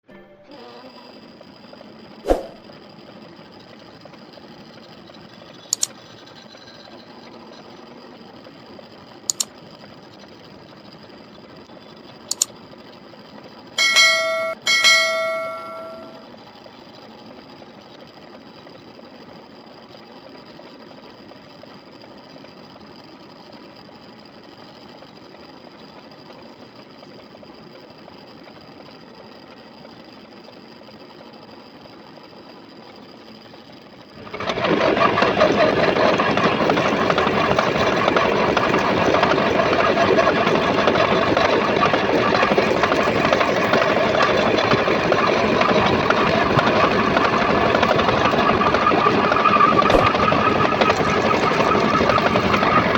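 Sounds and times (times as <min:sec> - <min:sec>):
metal lathe running: 0:13.8 - 0:16.2.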